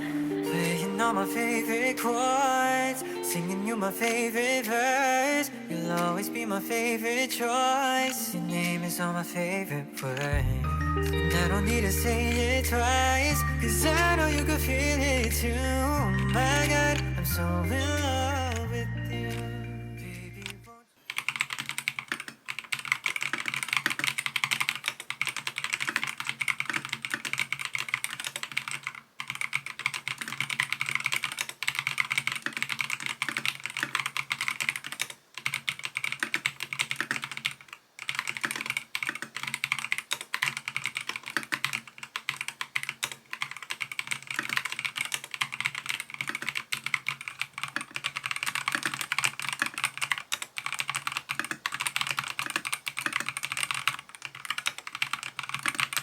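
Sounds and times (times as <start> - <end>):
fast typing on mechanical keyboard: 20.4 - 56.0.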